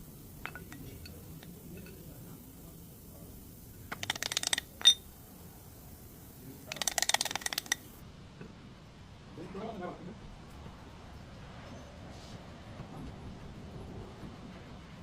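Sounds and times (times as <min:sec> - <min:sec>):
sharp metallic clink: 0:00.4 - 0:02.5, 0:03.9 - 0:05.2
ratchet wrench clicking: 0:00.4 - 0:02.6, 0:03.8 - 0:05.1, 0:06.6 - 0:08.0.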